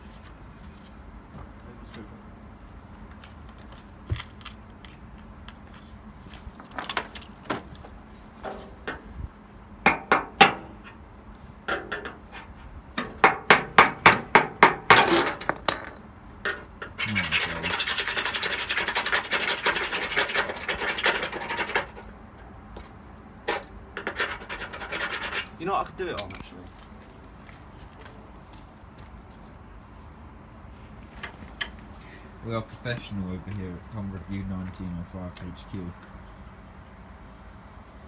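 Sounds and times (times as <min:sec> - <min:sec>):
paint scraping off metal: 0:16.8 - 0:22.1, 0:23.5 - 0:25.6.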